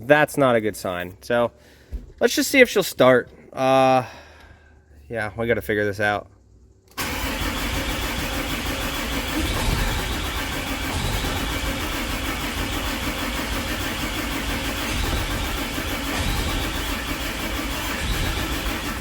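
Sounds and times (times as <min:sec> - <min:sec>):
diesel engine cranking without firing: 0:06.8 - 0:19.0.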